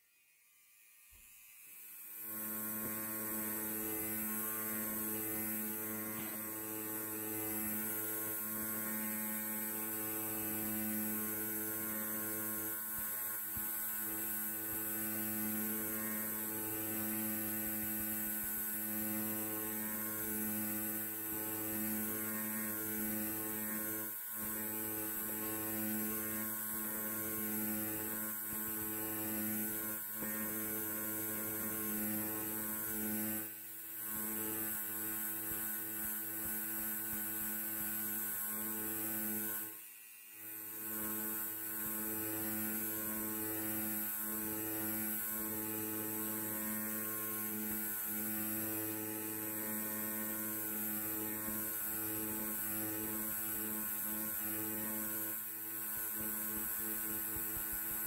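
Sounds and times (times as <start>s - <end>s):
electric hair clipper buzzing: 0.0s - 58.0s.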